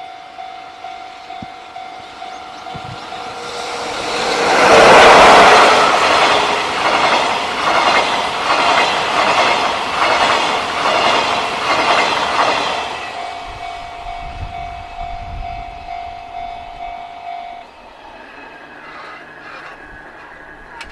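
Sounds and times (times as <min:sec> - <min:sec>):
train wheels clattering over rail joints: 0:04.2 - 0:13.0
level-crossing alarm pulsing tone: 0:13.0 - 0:17.8.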